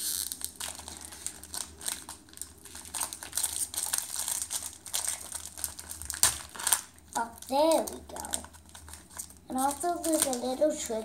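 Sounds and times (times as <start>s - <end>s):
foil wrapper crinkling: 0.0s - 11.0s.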